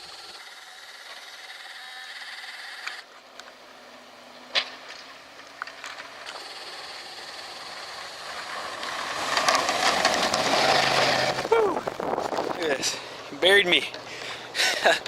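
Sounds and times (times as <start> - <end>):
truck engine: 0.0 - 15.0
plow blade rushing through snow: 3.7 - 13.0.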